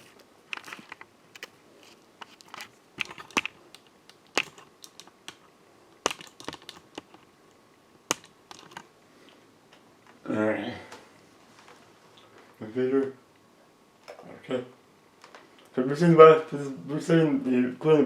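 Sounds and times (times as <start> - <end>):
computer keyboard keys pressed: 4.3 - 5.4, 6.0 - 7.2, 8.1 - 8.8.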